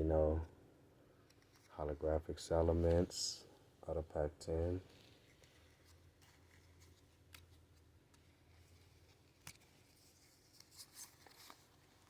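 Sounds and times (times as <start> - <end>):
trading cards rustling: 4.9 - 12.0.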